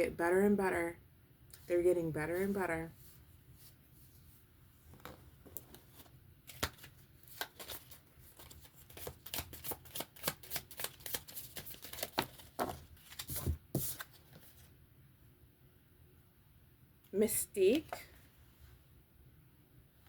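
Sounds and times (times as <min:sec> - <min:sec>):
cards being shuffled by hand: 0:04.9 - 0:14.7.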